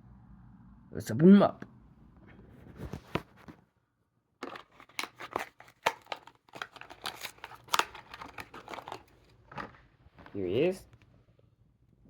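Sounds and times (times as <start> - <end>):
plastic blister pack crackling: 4.4 - 9.2.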